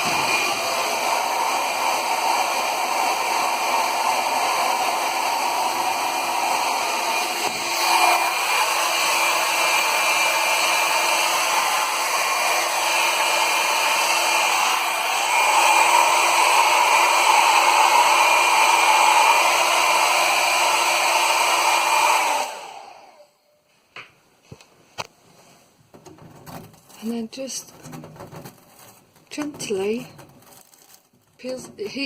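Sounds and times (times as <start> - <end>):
hair dryer running: 0.0 - 23.4.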